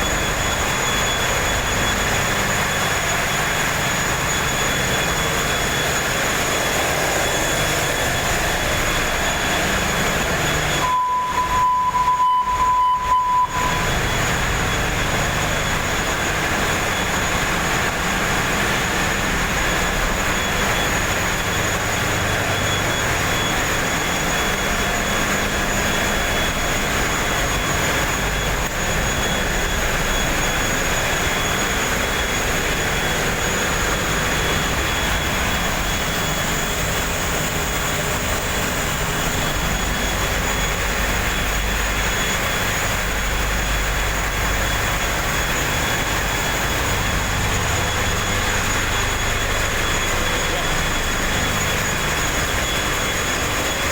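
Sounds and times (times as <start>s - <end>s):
diesel machinery drone: 0.0s - 53.9s
high machinery whines: 0.0s - 53.9s
steady high tone: 7.9s - 17.2s.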